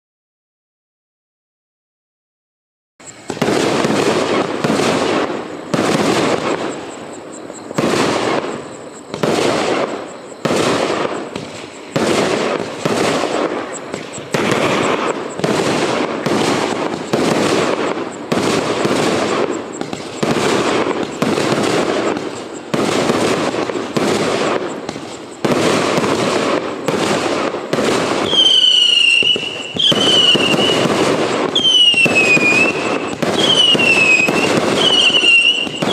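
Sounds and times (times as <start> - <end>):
firework battery shots: 3.0 - 35.9
firework whistle falling in pitch: 28.2 - 35.9.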